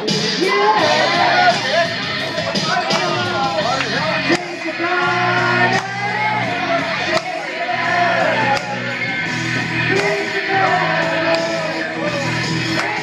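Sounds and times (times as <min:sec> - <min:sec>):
music backing track: 0:00.0 - 0:13.0
person singing: 0:02.8 - 0:09.2, 0:09.8 - 0:13.0.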